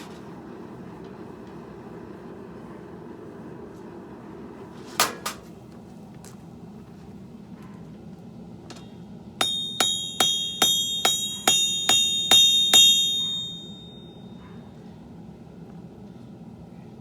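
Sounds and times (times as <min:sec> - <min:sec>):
hammer striking an anvil: 0:09.4 - 0:14.2.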